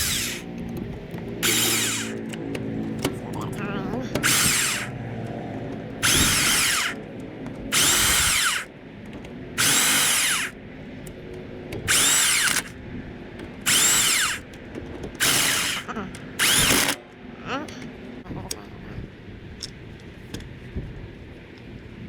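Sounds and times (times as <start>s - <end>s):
power drill whining: 0.0s - 0.6s, 1.4s - 2.4s, 3.1s - 5.0s, 6.0s - 7.0s, 7.7s - 8.7s, 9.6s - 10.6s, 11.9s - 12.8s, 13.6s - 14.6s, 15.2s - 17.0s.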